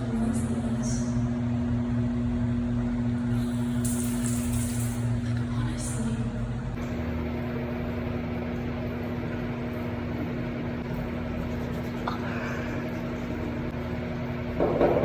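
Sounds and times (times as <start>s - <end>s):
mechanical hum: 0.0s - 15.0s.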